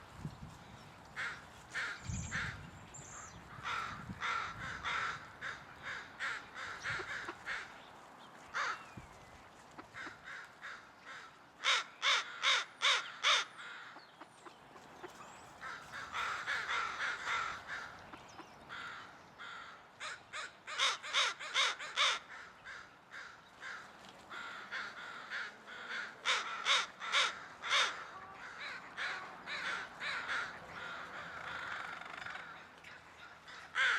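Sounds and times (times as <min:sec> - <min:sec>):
flock of crows cawing: 0:01.1 - 0:02.6, 0:03.4 - 0:09.0, 0:09.8 - 0:14.1, 0:15.1 - 0:33.9
loud crow caws in quick succession: 0:01.2 - 0:02.6, 0:03.6 - 0:07.7, 0:08.5 - 0:08.9, 0:09.9 - 0:14.0, 0:15.6 - 0:18.0, 0:18.7 - 0:32.7, 0:33.4 - 0:33.9.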